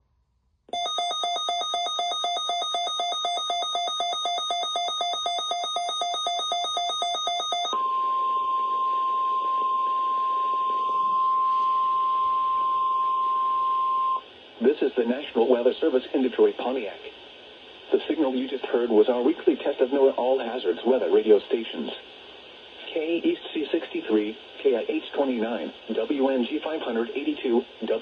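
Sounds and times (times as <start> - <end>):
steady warning alarm tone: 0.7 - 14.2
rapidly pulsing alarm beep: 0.8 - 13.0.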